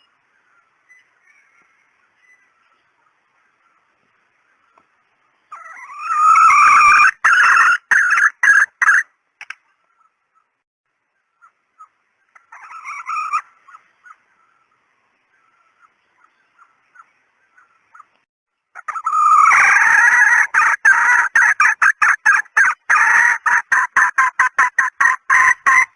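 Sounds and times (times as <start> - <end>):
junglefowl hen cackling: 5.5 - 9.1, 11.4 - 14.3, 18.8 - 25.9.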